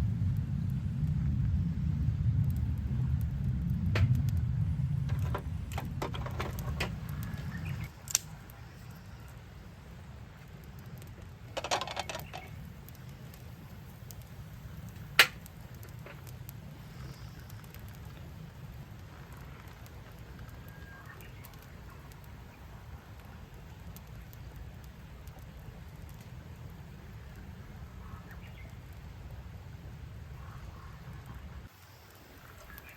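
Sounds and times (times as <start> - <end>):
low rumble: 0.0 - 11.6
campfire crackling and popping: 0.0 - 32.9.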